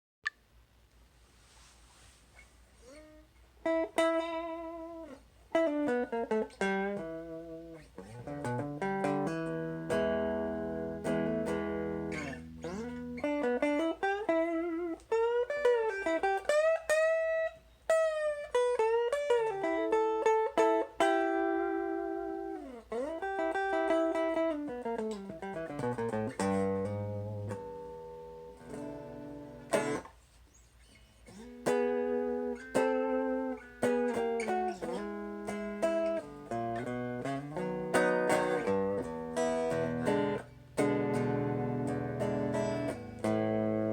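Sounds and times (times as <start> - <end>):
electric guitar through tube amplifier: 3.0 - 30.1, 31.2 - 43.9.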